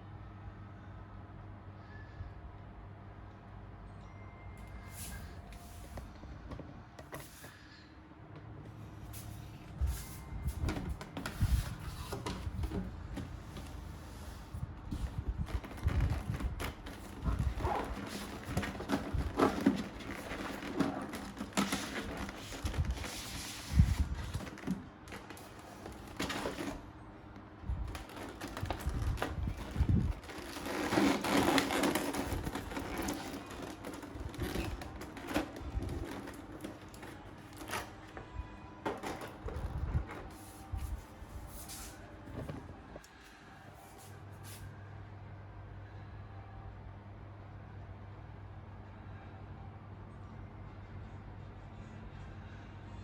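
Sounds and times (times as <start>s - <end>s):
cardboard and plastic packaging rustling: 8.8s - 43.0s.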